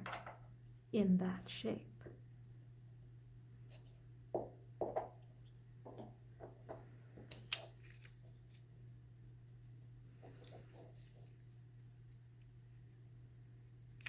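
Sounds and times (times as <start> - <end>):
paper rustling: 7.2 - 8.7.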